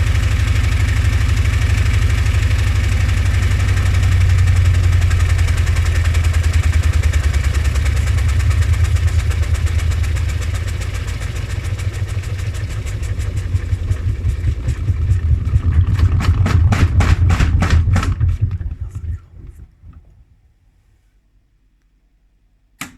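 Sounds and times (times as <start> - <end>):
washing machine drum thumping: 3.2 - 20.2.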